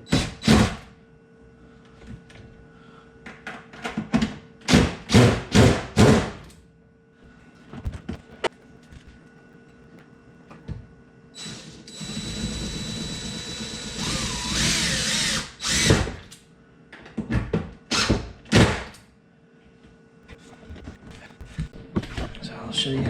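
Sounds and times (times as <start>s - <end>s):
cordless impact driver running: 11.4s - 16.2s.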